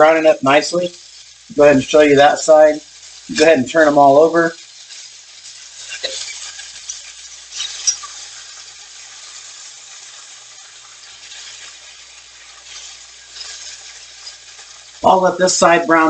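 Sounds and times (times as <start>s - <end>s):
meat sizzling in oil: 0.0s - 16.0s.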